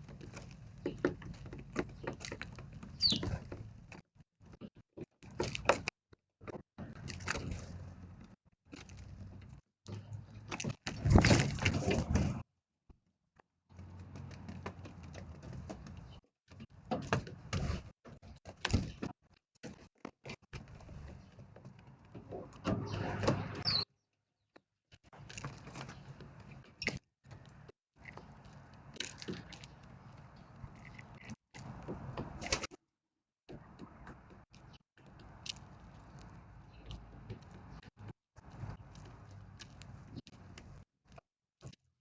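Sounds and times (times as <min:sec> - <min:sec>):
short high bird chirp: 0:03.0 - 0:03.3, 0:23.6 - 0:23.9.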